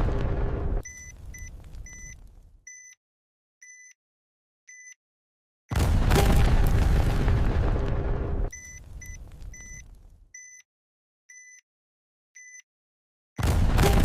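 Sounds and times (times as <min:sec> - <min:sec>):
explosion blast with rumble: 0:00.0 - 0:02.6, 0:05.7 - 0:10.2, 0:13.4 - 0:14.0
electronic bomb-timer beeps: 0:00.9 - 0:02.9, 0:08.5 - 0:10.6.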